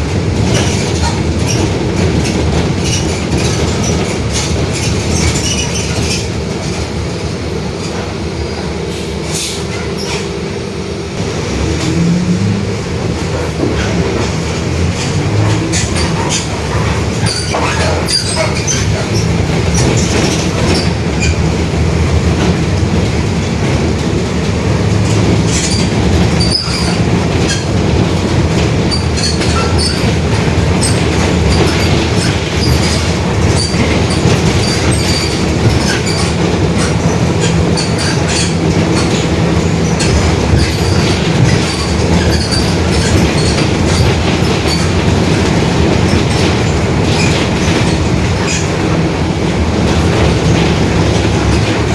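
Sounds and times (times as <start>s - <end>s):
bus engine running: 0.0s - 51.9s
differential growling: 11.2s - 17.2s.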